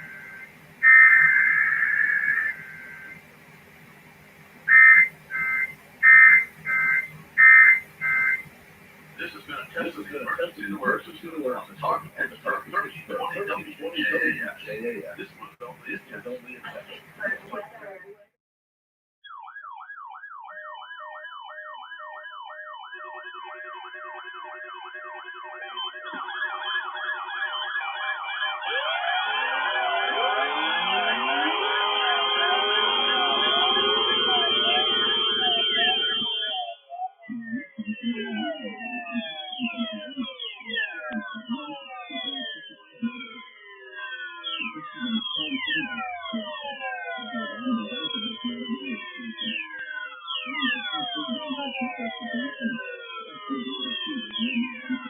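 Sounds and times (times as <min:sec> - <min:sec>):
electronic siren yelping: 0:00.0 - 0:03.3, 0:04.7 - 0:08.5, 0:09.2 - 0:14.9, 0:19.2 - 0:55.0
harsh digital data tones: 0:00.0 - 0:03.3, 0:04.7 - 0:08.5, 0:22.2 - 0:55.0
overlapping sirens wailing: 0:00.0 - 0:18.0, 0:19.2 - 0:55.0.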